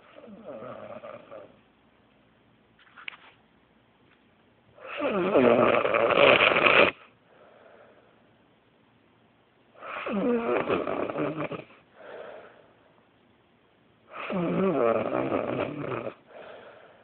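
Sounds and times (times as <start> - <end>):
very loud snoring: 0.1 - 1.6, 4.8 - 7.0, 9.8 - 11.8, 14.1 - 16.3
faint breath out: 7.2 - 8.2, 11.9 - 12.9, 16.2 - 17.0.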